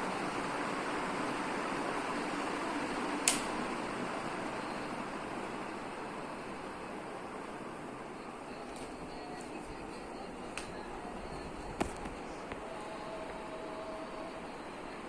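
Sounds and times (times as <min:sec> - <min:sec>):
ceiling fan running: 0:00.0 - 0:15.0
sharp click: 0:03.2 - 0:03.6.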